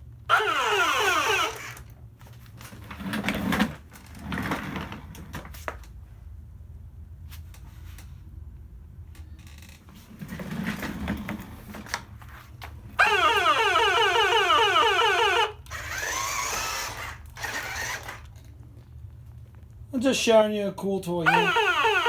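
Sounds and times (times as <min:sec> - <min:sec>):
toy siren yelping: 0:00.3 - 0:01.8, 0:13.0 - 0:18.2, 0:21.2 - 0:22.0
small motor whir: 0:00.3 - 0:01.9, 0:13.0 - 0:18.4, 0:21.3 - 0:22.0.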